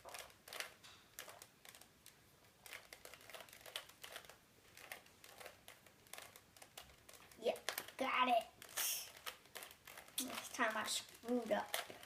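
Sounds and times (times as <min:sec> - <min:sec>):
puzzle cube plastic clicking: 0:00.0 - 0:12.0.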